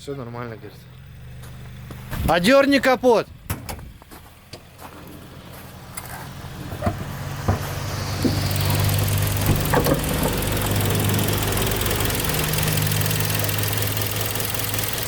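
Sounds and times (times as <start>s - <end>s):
car engine idling: 0.0s - 15.0s.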